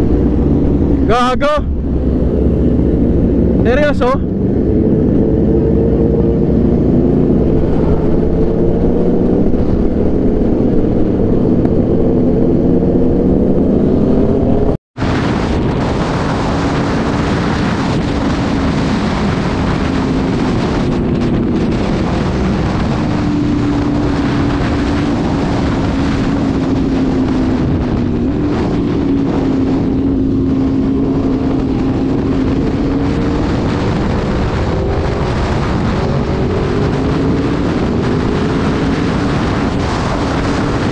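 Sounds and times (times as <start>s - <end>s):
motorcycle engine running: 0.0s - 14.8s
wind noise on microphone: 0.0s - 40.9s.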